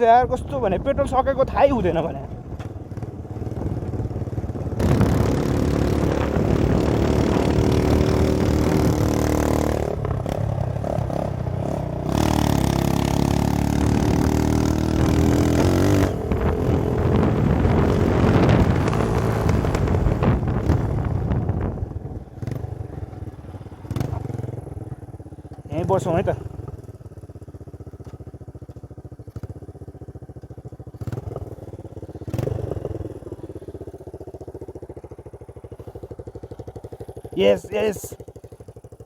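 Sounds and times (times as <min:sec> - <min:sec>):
motorcycle engine accelerating: 0:00.0 - 0:39.0
steady rushing noise: 0:03.4 - 0:22.9.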